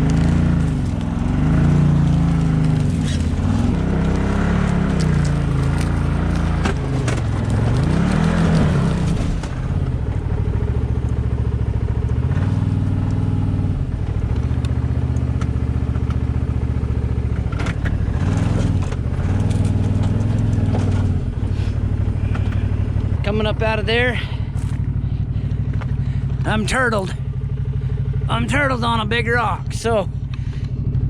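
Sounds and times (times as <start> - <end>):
rock scraping underbody: 0.0 - 9.5
engine revving: 0.0 - 31.0.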